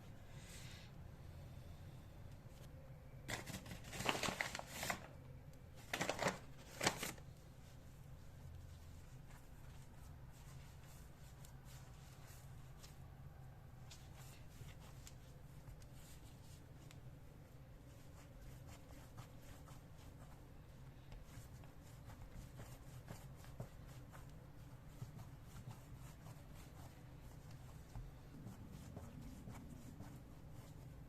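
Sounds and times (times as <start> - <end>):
low room hum: 0.0 - 31.0
hands rustling and scraping: 17.8 - 31.0.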